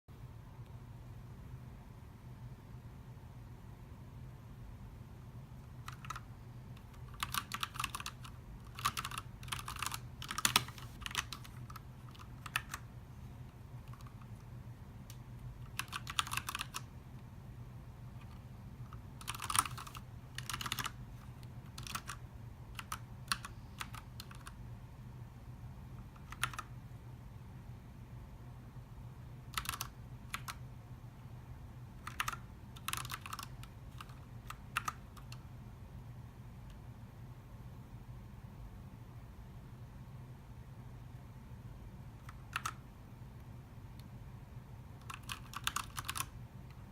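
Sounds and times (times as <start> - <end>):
faint low hum: 0.1 - 46.9
mechanical keyboard clacking: 5.8 - 12.8, 15.1 - 16.9, 18.2 - 21.0, 21.7 - 24.6, 26.2 - 26.7, 29.5 - 30.6, 32.0 - 35.4, 42.2 - 42.8, 45.0 - 46.8.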